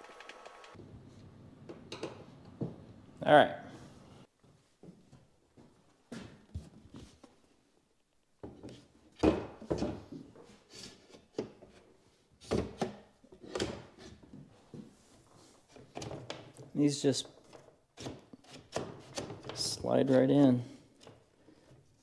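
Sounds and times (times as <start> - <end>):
wooden cabinet parts knocking: 9.2 - 10.1.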